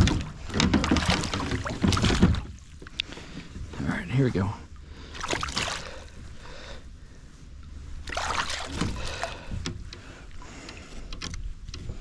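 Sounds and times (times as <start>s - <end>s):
water splashing: 0.0s - 3.0s, 5.0s - 6.1s, 8.0s - 9.5s.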